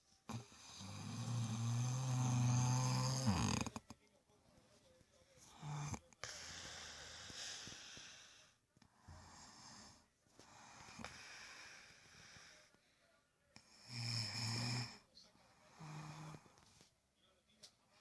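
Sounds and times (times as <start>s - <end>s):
person snoring: 0.3s - 3.8s, 5.5s - 8.4s, 13.6s - 15.0s, 15.6s - 16.5s.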